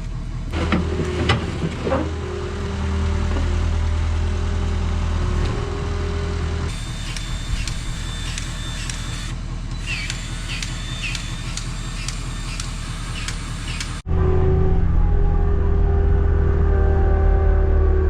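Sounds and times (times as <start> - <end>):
vehicle engine running: 0.0 - 14.2
regular ticking: 6.7 - 14.0.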